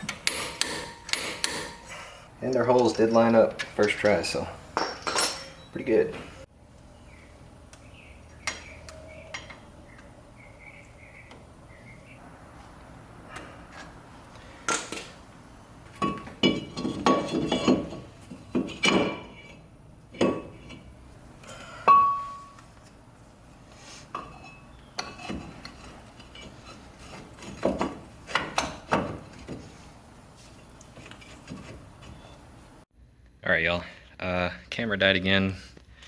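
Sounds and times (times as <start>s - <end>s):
metal parts clinking and knocking: 0.0s - 5.8s.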